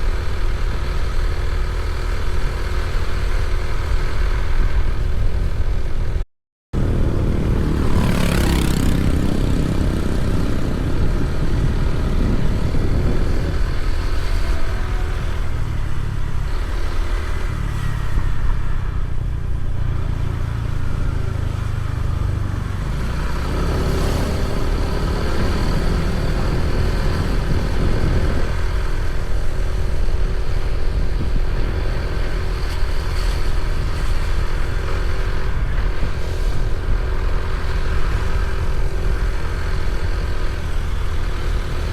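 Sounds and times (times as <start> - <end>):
vehicle engine rumbling: 0.0 - 41.9
vehicle passing: 6.8 - 41.9.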